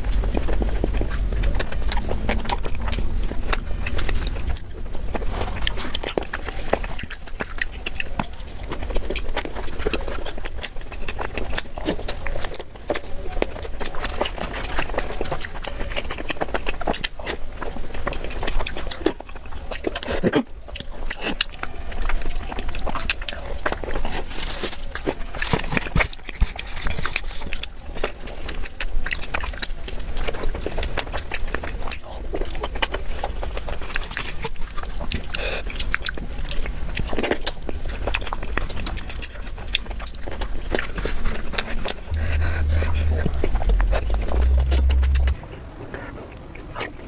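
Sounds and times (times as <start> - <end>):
low rumble: 0.0 - 7.0, 39.5 - 45.5
chewing and biting: 0.0 - 45.4.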